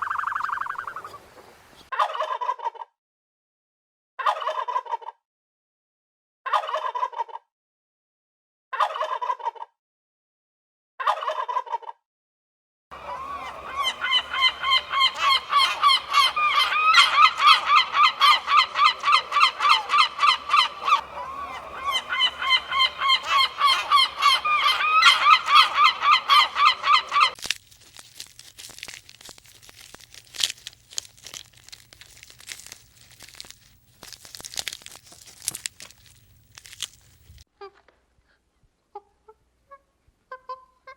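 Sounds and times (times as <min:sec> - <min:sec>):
animal calling: 0:00.0 - 0:01.8, 0:13.0 - 0:27.4
faint crunching and rustling: 0:27.3 - 0:38.0.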